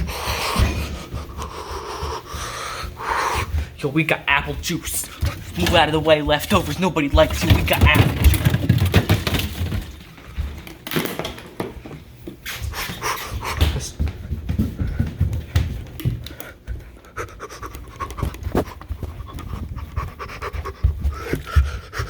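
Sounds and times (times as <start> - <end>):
heavy panting breaths: 0.0 - 7.0, 12.6 - 22.0
knocks and rustling: 2.9 - 16.9.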